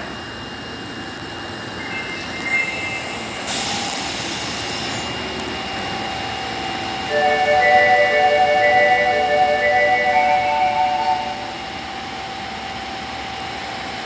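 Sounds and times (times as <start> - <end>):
high electrical whine: 0.0 - 13.7.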